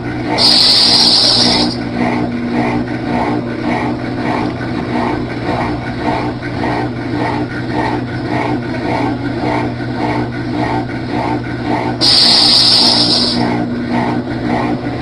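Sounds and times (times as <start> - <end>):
washing machine motor hum: 0.0 - 15.0
rhythmic scraping rubbing noise: 0.4 - 1.8, 12.0 - 13.5.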